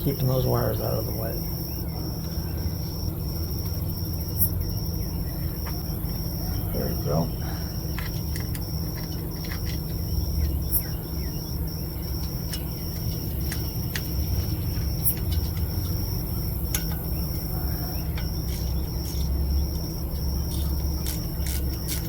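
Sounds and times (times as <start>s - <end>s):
crickets chirring: 0.0s - 22.0s
steady low hum: 0.0s - 22.0s
light clicks and taps of parts: 12.2s - 16.0s.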